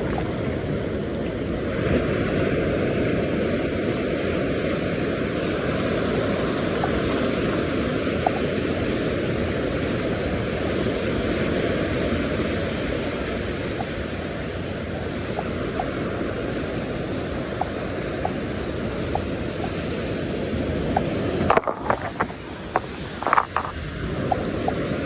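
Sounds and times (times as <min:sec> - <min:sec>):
rumbling surf: 0:00.0 - 0:25.0
wind noise on microphone: 0:00.0 - 0:25.0
faint ticks: 0:08.1 - 0:10.9, 0:13.7 - 0:14.0, 0:15.3 - 0:19.8, 0:20.8 - 0:24.8.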